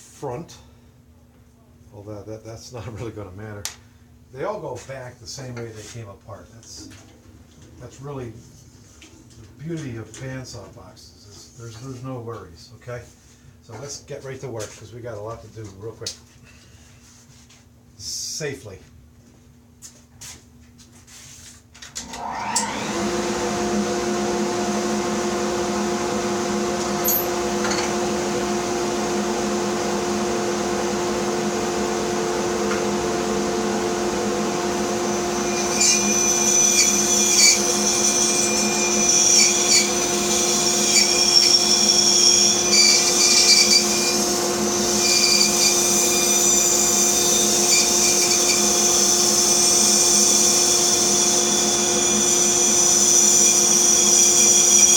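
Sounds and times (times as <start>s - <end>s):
bandsaw motor humming: 22.0s - 54.9s
saw blade cutting wood: 26.8s - 28.2s, 35.1s - 54.9s.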